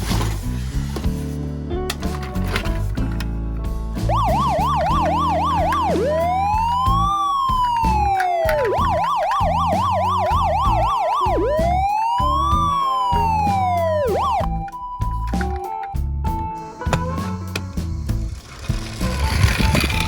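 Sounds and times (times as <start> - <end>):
background music: 0.0 - 20.0
police siren yelp and wail: 4.1 - 15.9.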